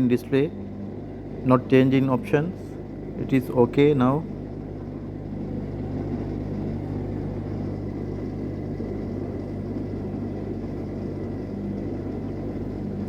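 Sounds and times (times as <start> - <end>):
washing machine drum spinning: 0.0 - 13.0.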